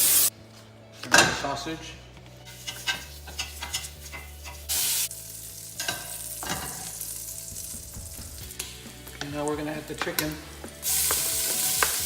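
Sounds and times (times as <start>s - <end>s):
sausage sizzling in a pan: 0.0s - 0.3s, 2.5s - 8.8s, 10.8s - 12.0s
utensil scraping a pan: 2.5s - 4.7s.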